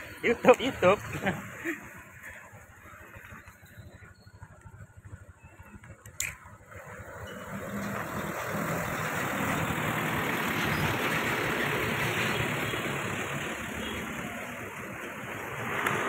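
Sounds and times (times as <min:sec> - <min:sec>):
vehicle engine running: 0:00.0 - 0:16.0
tyres hissing on wet road: 0:06.9 - 0:16.0.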